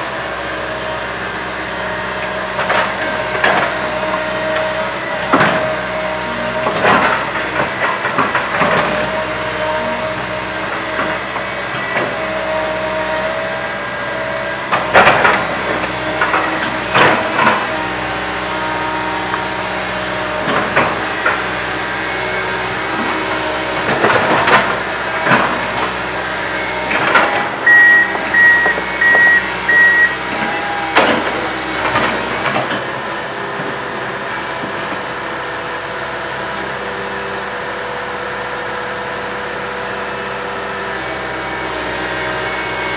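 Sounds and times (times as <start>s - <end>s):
excavator diesel engine running: 0.0s - 42.9s
short beeps: 27.6s - 30.2s.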